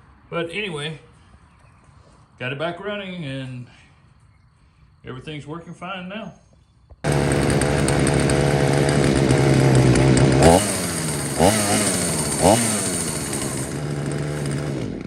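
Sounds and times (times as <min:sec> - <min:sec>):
chainsaw idling: 0:07.0 - 0:15.0
chainsaw revving: 0:07.0 - 0:15.0.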